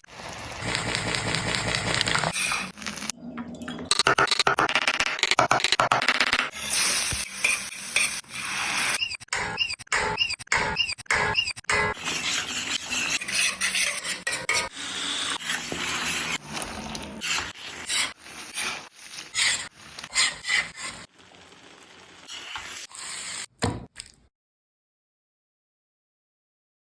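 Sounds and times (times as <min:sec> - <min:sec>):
spatula scraping a pan: 0:12.0 - 0:21.5
frying sizzle: 0:15.6 - 0:23.5.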